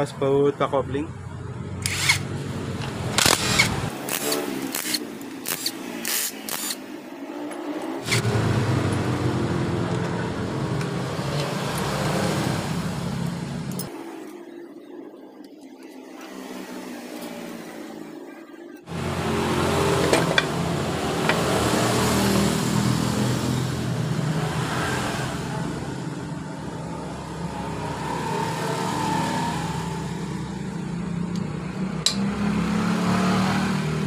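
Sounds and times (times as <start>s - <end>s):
sharp metallic clicks: 1.8s - 6.8s
engine starting and running: 1.8s - 14.3s, 18.9s - 32.7s.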